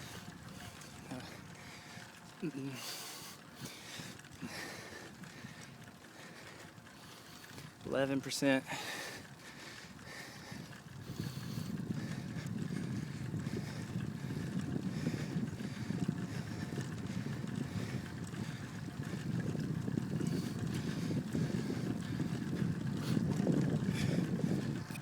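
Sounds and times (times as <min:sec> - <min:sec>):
wind noise on microphone: 0:10.0 - 0:25.0.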